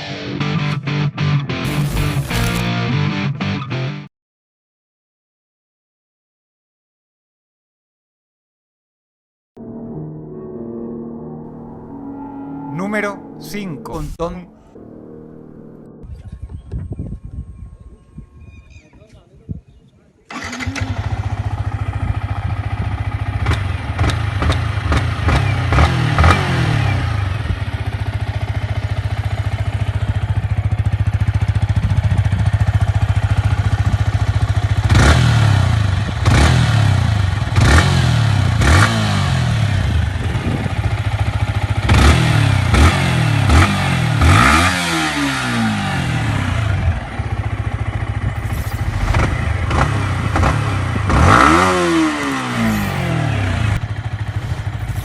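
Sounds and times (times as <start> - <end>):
motorcycle engine revving: 20.3 - 55.0.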